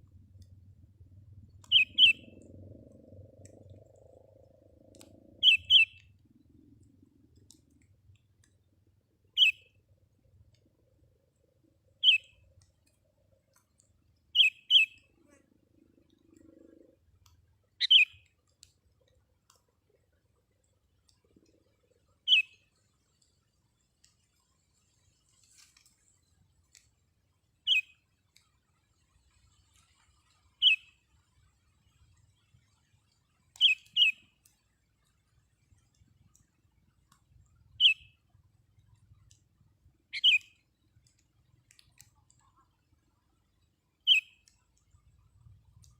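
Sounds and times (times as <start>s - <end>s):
bulbul chirping: 1.7s - 2.5s, 5.4s - 6.0s.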